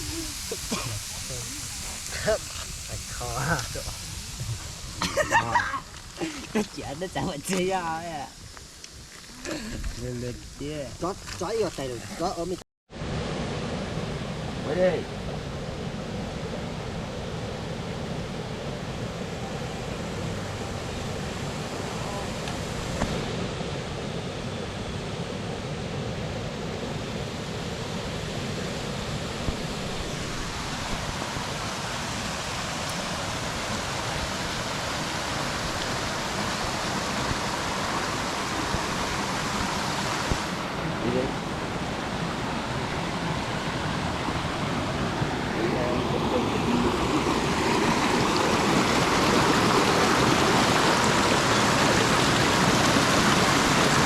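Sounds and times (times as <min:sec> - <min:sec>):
mountain stream rushing: 0:00.0 - 0:08.4, 0:27.8 - 0:54.0.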